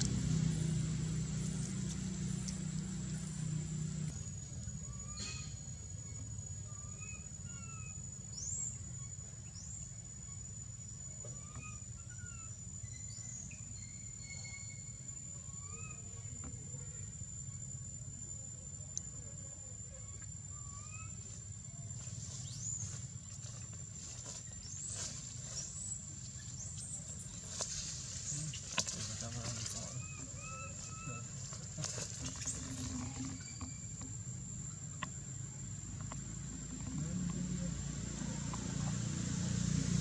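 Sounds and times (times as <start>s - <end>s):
high insect whine: 0.0s - 40.0s
small chirps: 1.4s - 39.3s
infant monkey squeaky calls: 28.8s - 33.9s.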